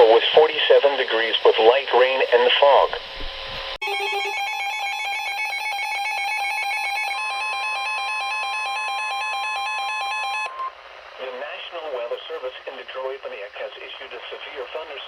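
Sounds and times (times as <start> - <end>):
steady warning alarm tone: 2.3 - 10.7.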